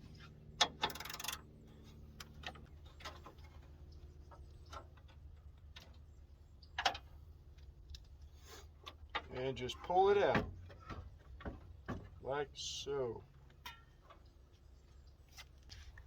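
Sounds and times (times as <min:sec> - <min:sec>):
tools clicking and knocking: 0:00.6 - 0:01.5
scraping rattle: 0:00.7 - 0:02.0.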